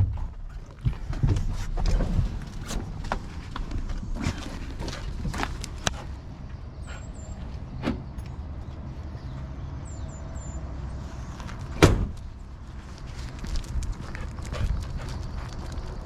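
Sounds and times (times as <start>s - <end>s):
loud thump: 11.8s - 12.2s.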